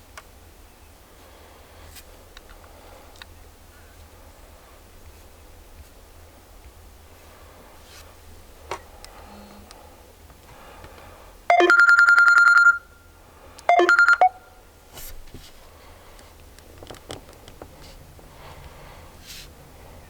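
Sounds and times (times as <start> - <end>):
electronic ringtone trill: 11.5 - 12.9, 13.7 - 14.5.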